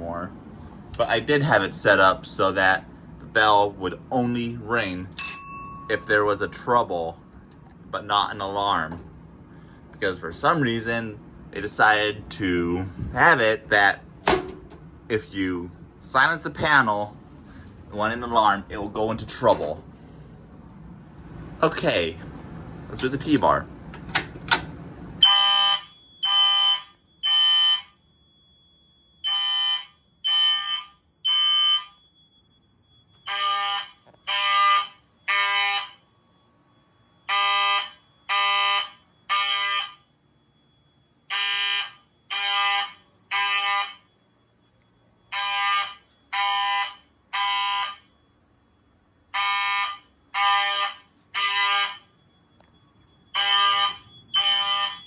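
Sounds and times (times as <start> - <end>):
thin steady high tone: 4.2 - 7.2, 25.2 - 34.3
fire alarm horn blasts: 25.2 - 55.0.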